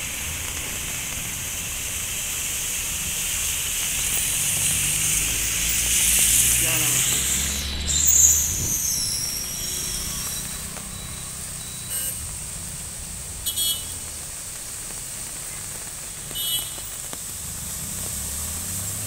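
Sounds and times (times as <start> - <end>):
road traffic: 0.0 - 19.0
vehicle horn beeps: 9.3 - 12.4, 13.4 - 14.1, 16.3 - 16.9.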